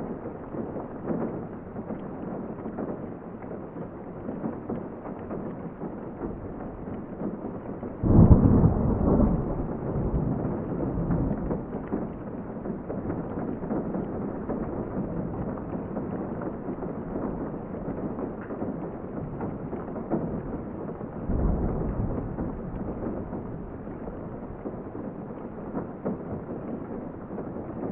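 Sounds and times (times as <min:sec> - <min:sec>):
muffled steady rain: 0:00.0 - 0:27.9.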